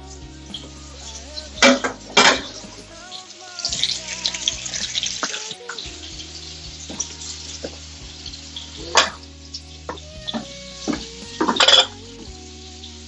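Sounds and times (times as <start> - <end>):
steaks sizzling in a pan: 0.0 - 13.0.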